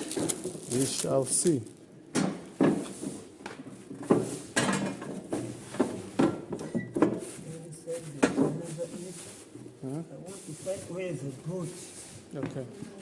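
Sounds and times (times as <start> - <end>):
knocks and clatter of parts: 0.0 - 1.1, 2.1 - 7.4, 8.1 - 8.8.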